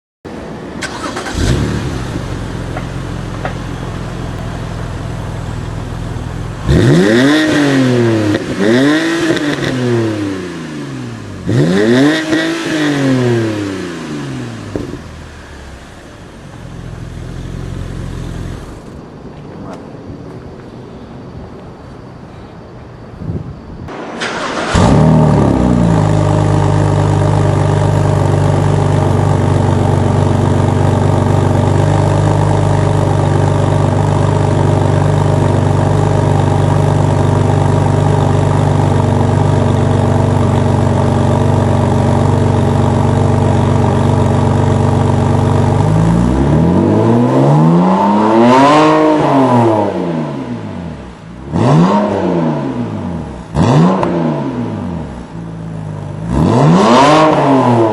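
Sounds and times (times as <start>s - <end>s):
car engine starting and idling: 0.3s - 19.1s, 23.9s - 57.9s
car engine revving: 0.8s - 19.0s, 24.2s - 57.9s.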